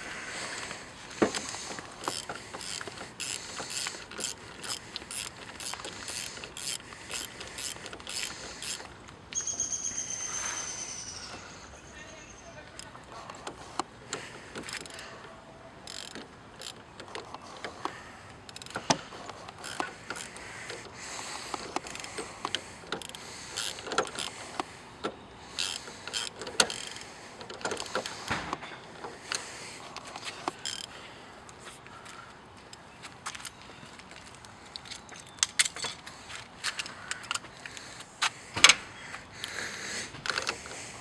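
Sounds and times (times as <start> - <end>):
socket ratchet clicking: 1.3 - 9.5, 15.8 - 28.2.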